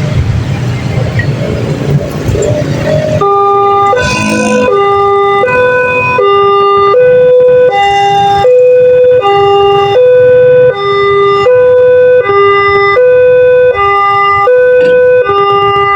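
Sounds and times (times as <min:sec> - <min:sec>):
road traffic noise: 0:00.0 - 0:15.9
level crossing warning siren: 0:01.5 - 0:15.9.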